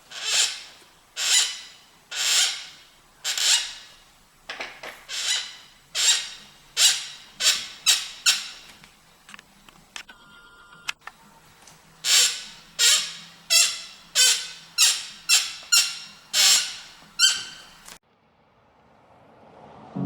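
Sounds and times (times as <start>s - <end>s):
e-bike motor squeaking: 0.0s - 4.0s, 5.0s - 8.8s, 12.0s - 18.0s.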